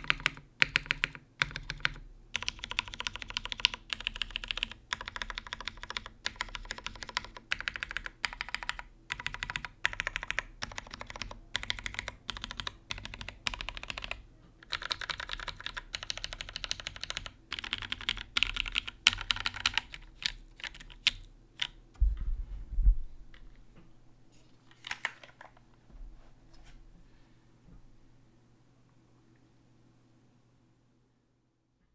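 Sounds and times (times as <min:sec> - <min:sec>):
low thump: 0:22.0 - 0:23.2.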